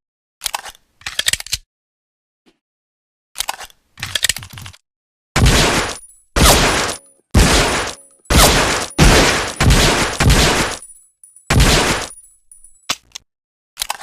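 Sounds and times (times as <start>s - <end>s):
pistol shots with echo: 5.4s - 10.9s, 11.5s - 12.2s.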